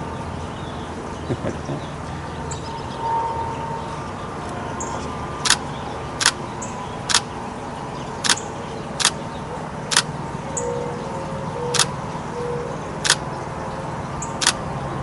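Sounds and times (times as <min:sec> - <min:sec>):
outdoor background noise: 0:00.0 - 0:15.0
camera shutter clicks: 0:05.4 - 0:05.6, 0:06.2 - 0:06.4, 0:07.1 - 0:07.3, 0:13.0 - 0:13.2, 0:14.4 - 0:14.6.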